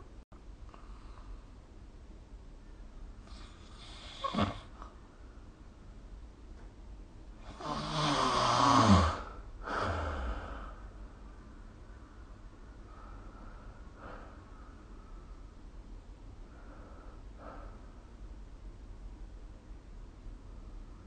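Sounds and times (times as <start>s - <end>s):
person snoring: 3.7s - 4.7s, 7.4s - 10.8s.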